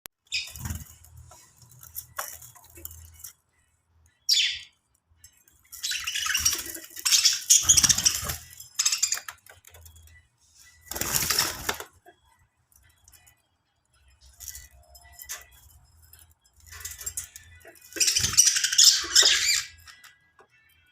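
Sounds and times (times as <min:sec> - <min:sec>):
birds fluttering wings: 0:00.4 - 0:03.3, 0:05.8 - 0:09.9, 0:10.8 - 0:12.0.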